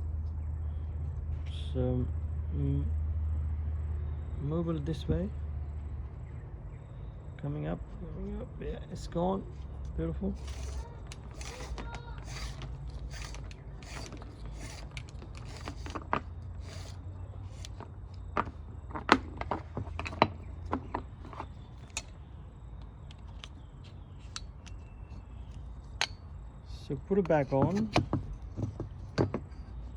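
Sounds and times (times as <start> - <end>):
steady low hum: 0.0 - 29.9
clicks and knocks of plastic and metal parts: 10.4 - 22.2, 27.2 - 29.7.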